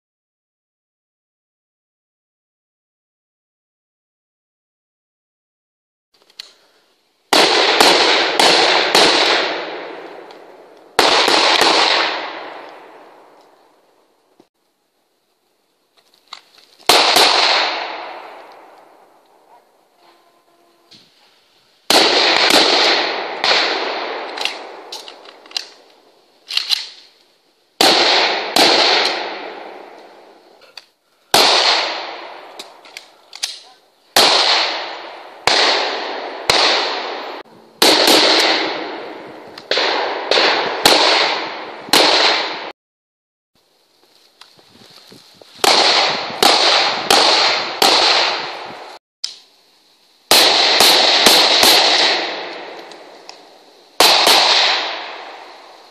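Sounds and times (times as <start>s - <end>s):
gunshots with echoing tail: 7.3s - 13.3s, 16.9s - 19.0s, 21.9s - 25.2s, 27.8s - 30.4s, 31.3s - 32.8s, 34.2s - 42.7s, 45.6s - 49.0s, 50.3s - 55.8s.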